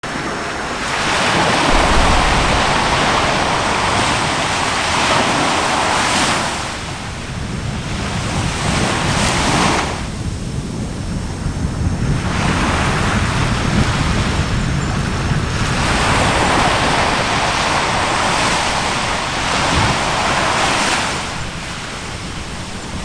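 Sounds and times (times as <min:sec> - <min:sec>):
wind on microphone: 0:00.0 - 0:23.0
lava vent rushing: 0:00.3 - 0:08.2.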